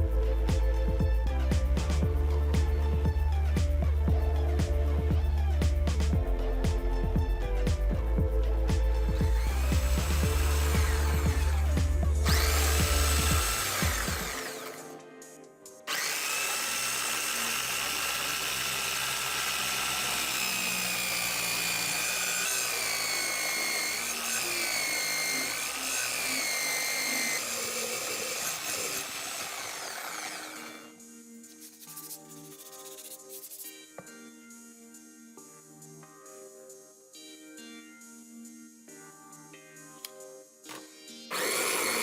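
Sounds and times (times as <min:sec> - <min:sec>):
music with bass line: 0:00.0 - 0:14.7
small power tool motor whine: 0:09.1 - 0:15.0, 0:15.9 - 0:31.2, 0:40.7 - 0:42.0.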